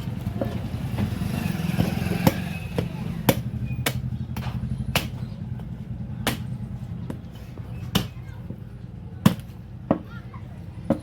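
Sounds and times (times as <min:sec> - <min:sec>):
low engine hum: 0:00.0 - 0:11.0
cleaver chopping: 0:00.4 - 0:08.2, 0:09.2 - 0:10.1.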